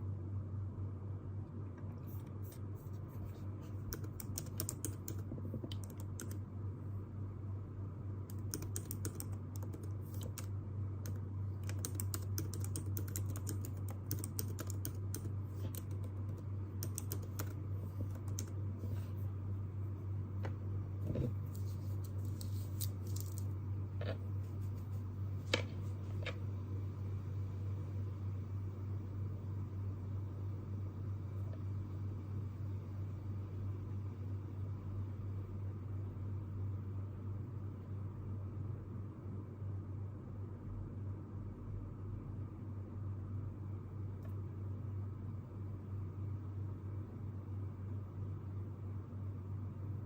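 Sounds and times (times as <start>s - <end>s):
keyboard typing: 3.7s - 6.4s, 8.3s - 18.6s, 21.2s - 24.2s.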